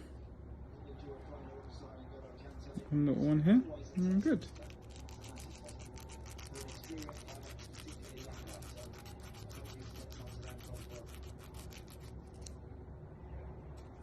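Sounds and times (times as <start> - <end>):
parrot gnawing food: 4.0 - 12.6.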